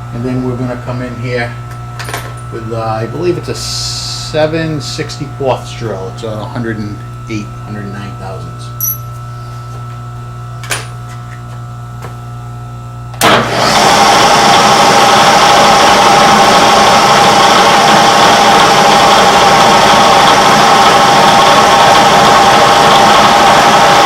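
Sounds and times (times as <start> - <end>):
milling machine spindle whine: 0.0 - 12.0, 12.6 - 24.0
low steady hum: 0.0 - 13.2.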